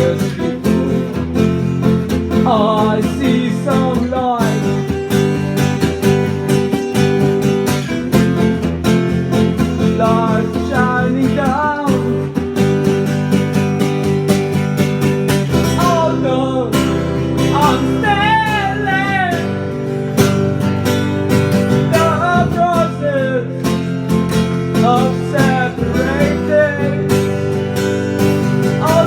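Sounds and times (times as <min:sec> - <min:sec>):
person singing with vibrato: 0:00.0 - 0:05.2, 0:09.7 - 0:12.5, 0:15.4 - 0:20.0, 0:21.5 - 0:29.0
strummed acoustic guitar: 0:00.0 - 0:29.0.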